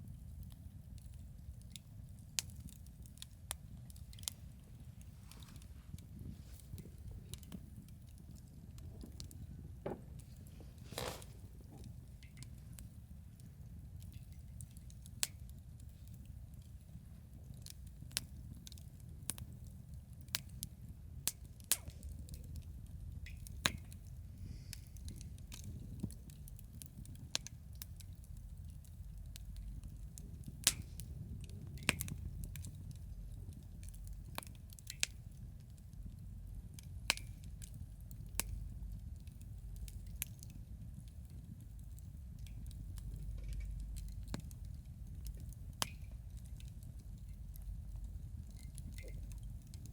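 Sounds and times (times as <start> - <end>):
campfire crackling and popping: 0.0 - 49.9
steady low rumble: 41.6 - 49.9.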